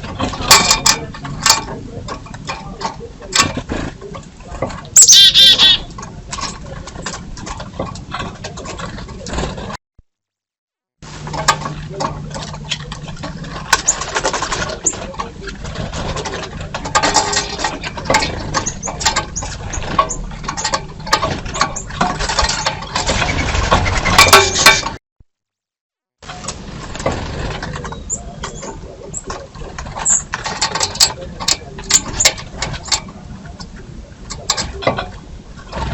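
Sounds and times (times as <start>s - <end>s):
birds tapping and clicking: 0.0s - 9.6s, 11.1s - 25.0s, 26.2s - 35.9s
bird chirps: 5.0s - 5.9s.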